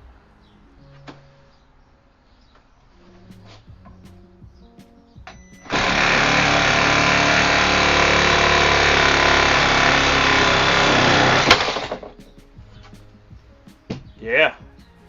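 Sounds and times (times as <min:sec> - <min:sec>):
sharp wood crack: 0:05.6 - 0:13.0
reciprocating saw cutting wood: 0:05.7 - 0:12.0.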